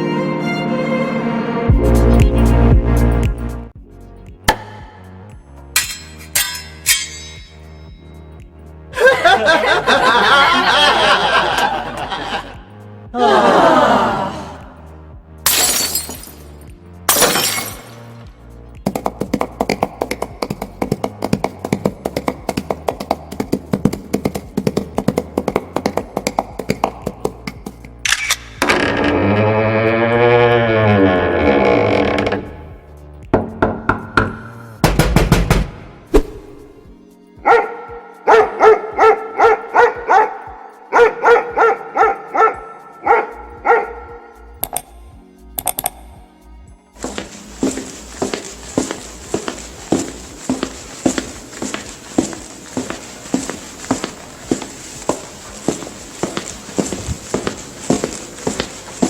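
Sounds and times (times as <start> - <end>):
dog barking: 37.4 - 44.4.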